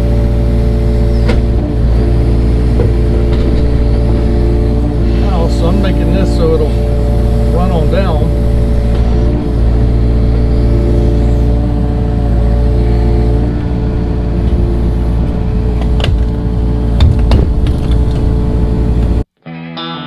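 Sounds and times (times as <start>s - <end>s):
tractor engine running: 0.0s - 19.2s
sharp knocks: 15.8s - 18.6s.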